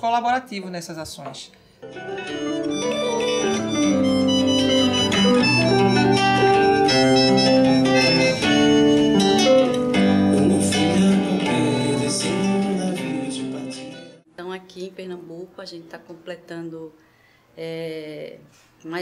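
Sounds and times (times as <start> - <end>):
melodic held instrumental notes: 1.8 - 14.3.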